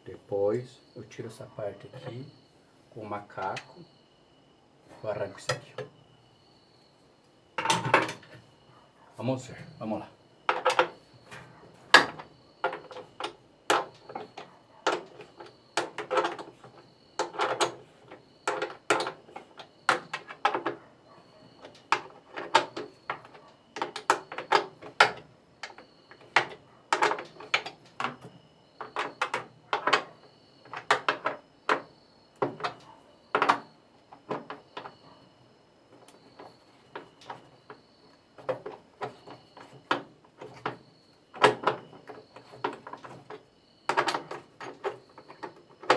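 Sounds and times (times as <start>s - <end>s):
jack metallic clicks and knocks: 7.6s - 8.4s, 9.5s - 20.8s, 21.4s - 35.2s, 38.4s - 45.9s.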